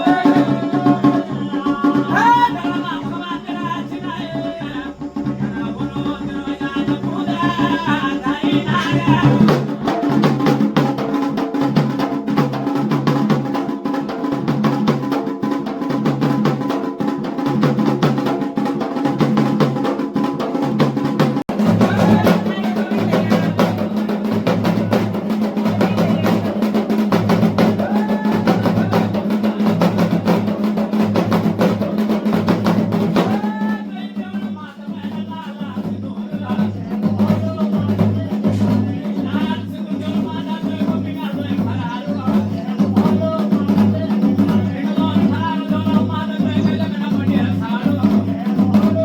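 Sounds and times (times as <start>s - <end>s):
loud music with fast drum beat: 0.0s - 49.0s.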